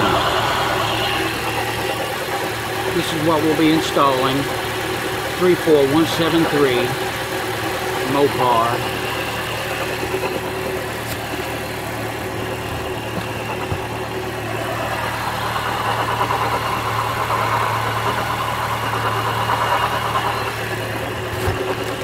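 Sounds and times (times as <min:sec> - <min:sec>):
car engine idling: 0:00.0 - 0:22.0
rough bearing noise: 0:08.8 - 0:22.0.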